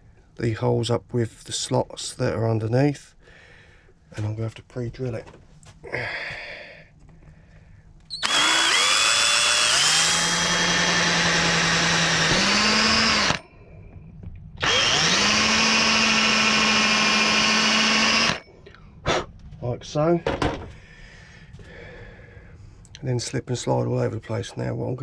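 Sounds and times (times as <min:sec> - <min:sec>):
power drill whining: 0:08.1 - 0:13.4, 0:14.6 - 0:18.4.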